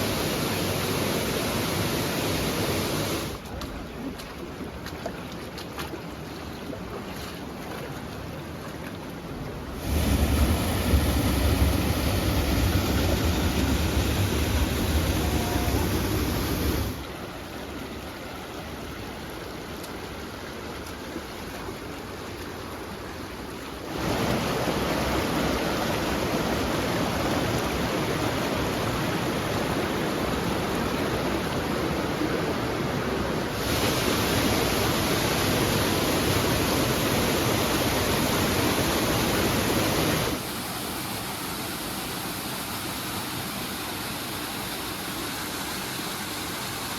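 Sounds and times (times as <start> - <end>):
creek water and waterfalls rushing: 0.0 - 3.5, 9.5 - 46.9
deep rumble: 9.8 - 17.0.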